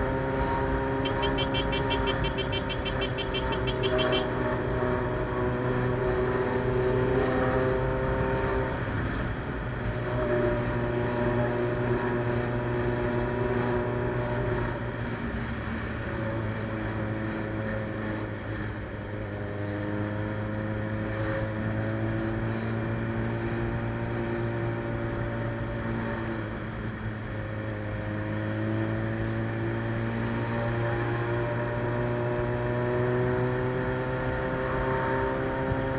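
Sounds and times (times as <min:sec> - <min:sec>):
motorcycle engine revving: 0:00.0 - 0:09.3.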